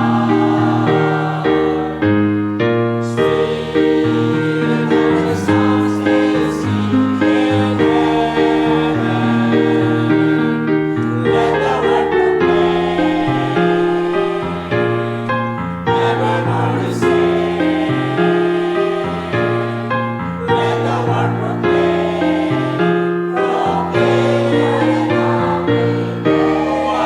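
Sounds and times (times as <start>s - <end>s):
choir singing a hymn: 0.0s - 27.0s
piano accompaniment: 0.0s - 27.0s.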